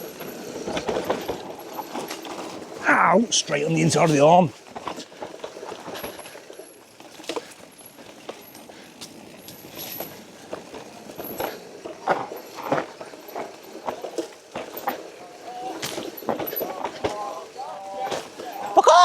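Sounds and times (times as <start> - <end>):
bike knocking and clattering: 4.6 - 18.8.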